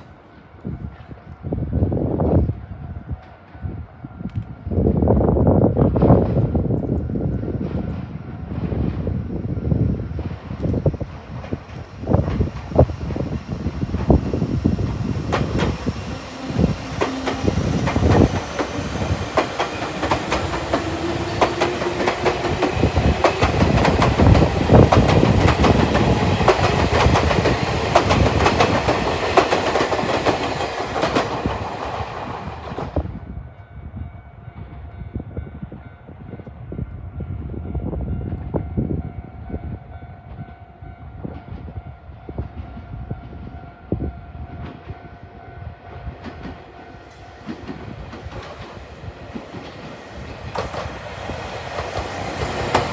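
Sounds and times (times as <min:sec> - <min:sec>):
train wheels clacking over rail joints: 0:13.9 - 0:33.0, 0:46.2 - 0:52.9.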